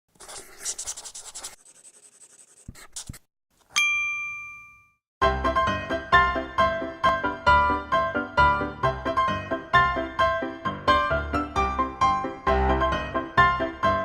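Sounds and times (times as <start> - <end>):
scratchy rubbing: 0.1 - 3.3
bell-like ding: 3.8 - 5.0
music with piano-like beat: 5.2 - 14.0.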